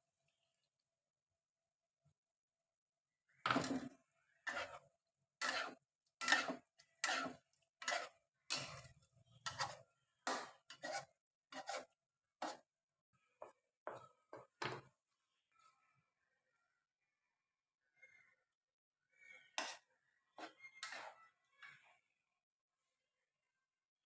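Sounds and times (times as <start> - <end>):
utensil scraping in a pan: 3.5 - 12.7, 19.4 - 21.3.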